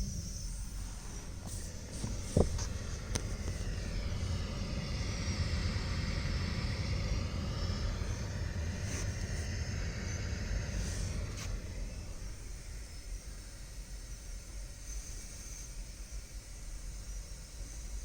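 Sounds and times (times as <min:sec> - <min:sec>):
speaker hiss: 0:00.0 - 0:18.0.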